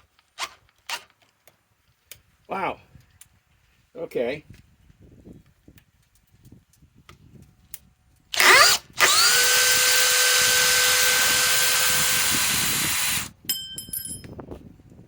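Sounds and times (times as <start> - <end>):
cordless drill whining: 8.4 - 13.3.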